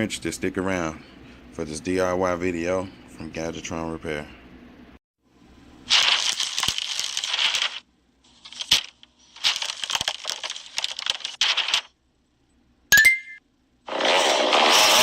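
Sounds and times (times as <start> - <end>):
crunching crackling noise: 5.9 - 12.0.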